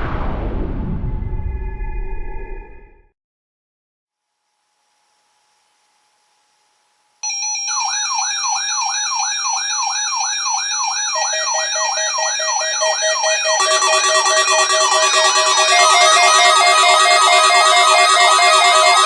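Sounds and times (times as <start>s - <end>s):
steady beeping tones: 7.2s - 19.0s
rising electronic alarm sweep: 7.3s - 19.0s.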